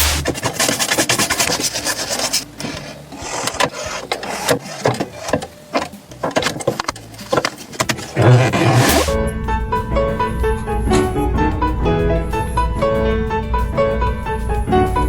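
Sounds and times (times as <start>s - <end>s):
scraping on leather: 0.0s - 9.2s
rubbing strokes on leather: 7.2s - 9.2s.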